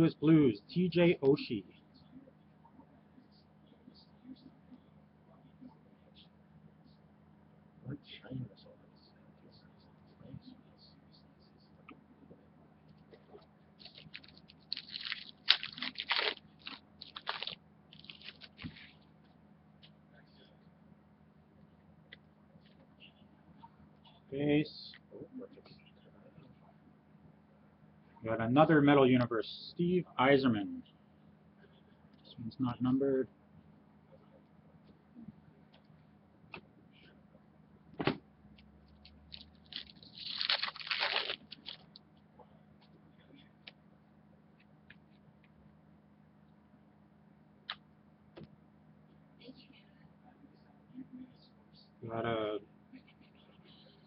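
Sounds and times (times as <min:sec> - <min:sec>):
plastic packaging crinkling: 0:13.8 - 0:18.8, 0:39.3 - 0:42.0
paper and plastic rustling: 0:13.8 - 0:18.9, 0:39.3 - 0:41.9.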